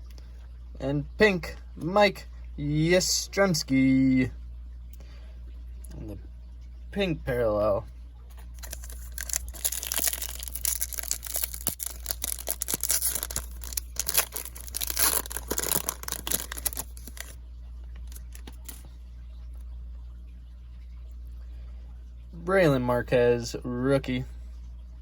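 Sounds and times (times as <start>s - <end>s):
wrapper tearing and crinkling: 8.6s - 17.4s, 18.1s - 18.8s.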